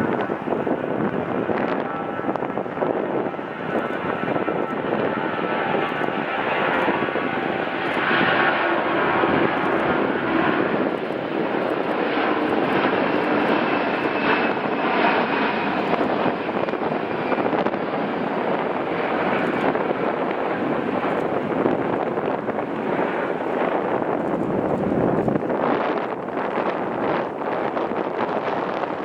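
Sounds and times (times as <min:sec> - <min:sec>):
jet airliner engines rushing: 0:00.0 - 0:29.0.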